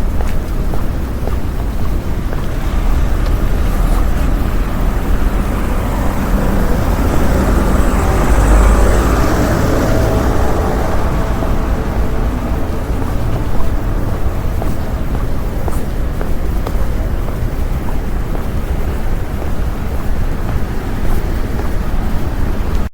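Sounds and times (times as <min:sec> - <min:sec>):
low traffic rumble: 0:00.0 - 0:22.9
vehicle passing: 0:00.0 - 0:22.9.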